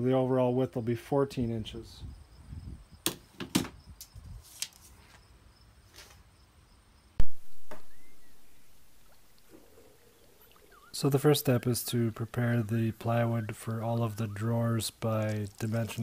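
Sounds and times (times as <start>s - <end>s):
loud thump: 7.2s - 8.1s.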